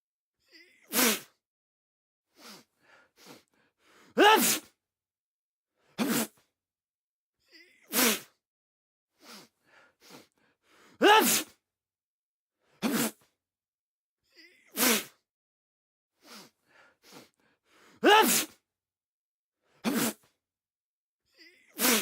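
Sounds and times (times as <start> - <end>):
man sneezing: 0.5 - 1.3, 4.2 - 4.7, 6.0 - 6.4, 7.8 - 8.3, 11.0 - 11.6, 12.8 - 13.3, 14.6 - 15.2, 18.0 - 18.6, 19.8 - 20.3, 21.7 - 22.0.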